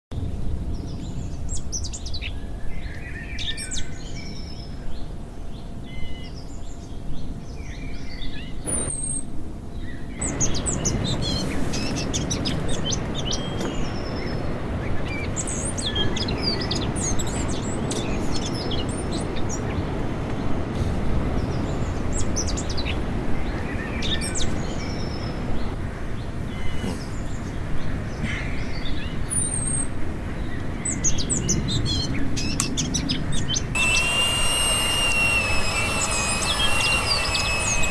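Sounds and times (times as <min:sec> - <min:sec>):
small birds chirping: 0:32.5 - 0:37.9.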